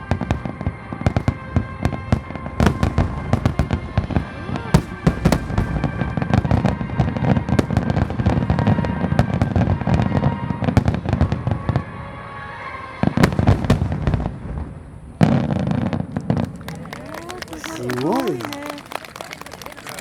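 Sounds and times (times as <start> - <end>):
loud firework bangs: 0.0 - 11.8, 13.1 - 16.5
fireworks booming and crackling: 0.0 - 12.2, 13.0 - 18.7.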